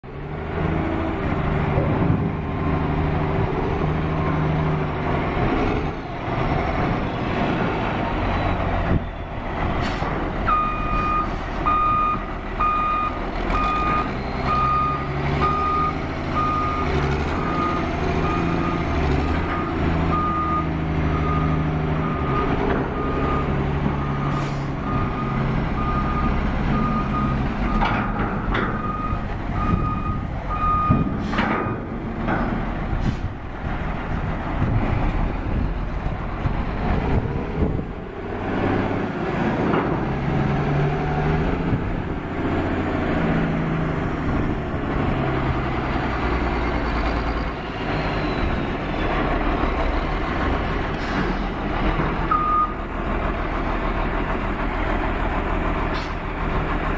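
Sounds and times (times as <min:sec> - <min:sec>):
diesel machine engine running: 0:00.0 - 0:56.9
reversing alarm beeping: 0:10.5 - 0:18.9, 0:19.6 - 0:27.8, 0:28.8 - 0:31.9, 0:52.3 - 0:52.9.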